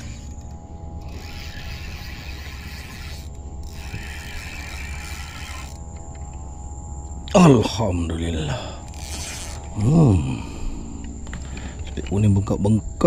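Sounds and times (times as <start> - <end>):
fishing reel ratcheting whirr: 0.0 - 6.4, 8.7 - 10.0.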